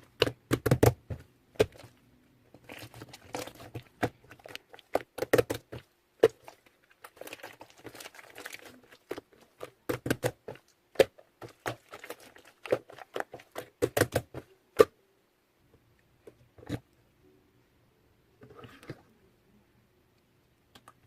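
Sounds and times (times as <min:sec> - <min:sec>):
soft plastic crinkling: 0:01.6 - 0:14.6.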